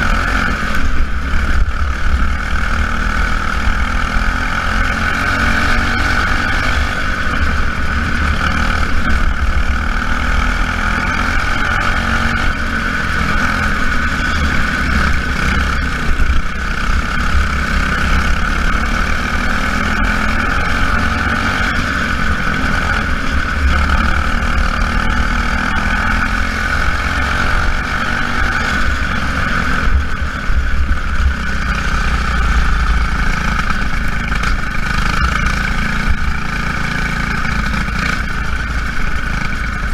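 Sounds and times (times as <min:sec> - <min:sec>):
steady high-pitched drone: 0:00.0 - 0:39.9.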